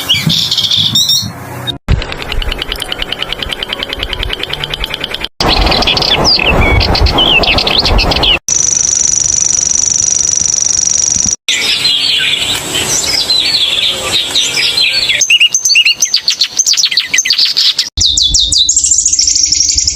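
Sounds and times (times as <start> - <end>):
songbirds chirping: 11.5 - 19.9.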